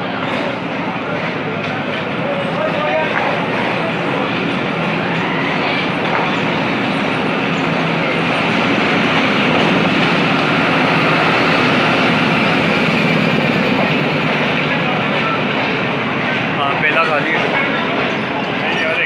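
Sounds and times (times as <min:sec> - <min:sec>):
train rumbling on rails: 0:00.0 - 0:19.0.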